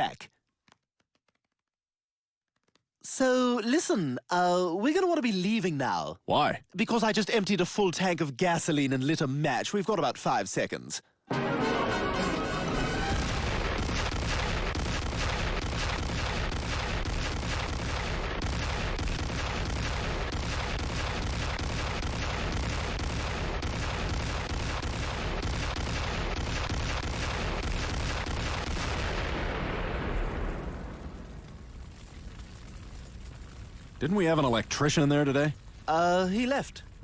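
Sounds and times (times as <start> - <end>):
cartoon explosion blasts: 11.3 - 31.8.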